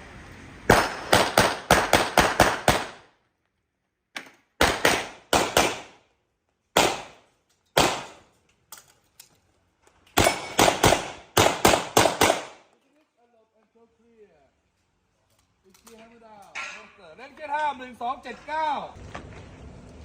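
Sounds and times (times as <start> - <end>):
handgun shots: 4.6 - 5.9, 6.8 - 7.2, 7.8 - 8.2, 10.2 - 12.6.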